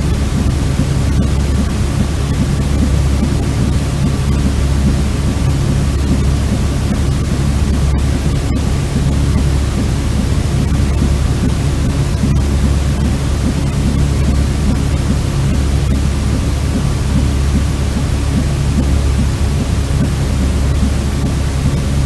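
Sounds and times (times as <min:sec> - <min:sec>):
white noise rumble and hiss: 0:00.0 - 0:22.0.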